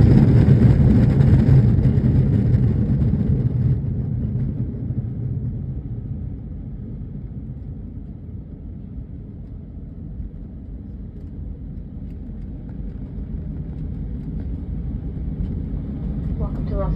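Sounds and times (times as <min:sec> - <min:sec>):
jet airliner rumble: 0:00.0 - 0:16.9.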